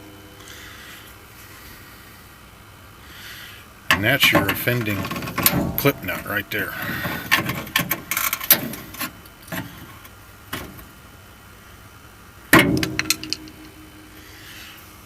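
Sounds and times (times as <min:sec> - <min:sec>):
metallic clang: 0:03.9 - 0:09.1, 0:12.6 - 0:14.4
small metal parts clinking: 0:12.8 - 0:13.8.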